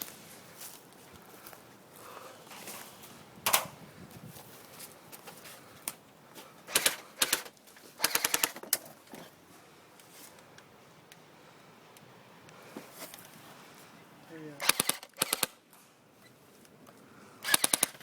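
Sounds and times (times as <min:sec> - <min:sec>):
airsoft guns firing bursts: 0:06.7 - 0:08.6, 0:14.6 - 0:15.6, 0:17.4 - 0:18.0.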